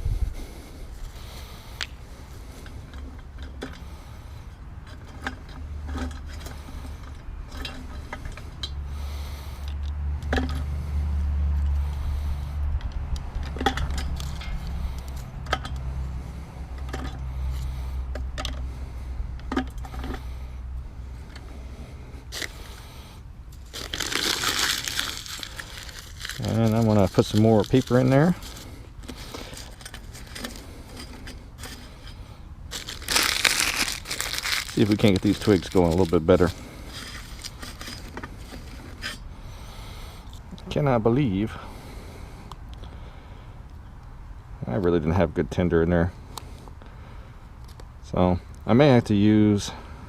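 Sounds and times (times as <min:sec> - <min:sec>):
paper crumpling: 0:23.6 - 0:30.6, 0:32.7 - 0:38.8
twigs snapping: 0:23.6 - 0:30.6, 0:32.7 - 0:38.0.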